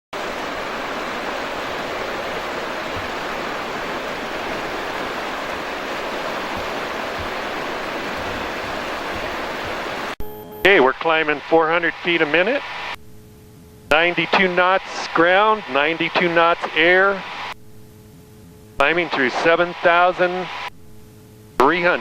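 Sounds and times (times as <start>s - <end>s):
white water rushing: 0.2s - 10.2s.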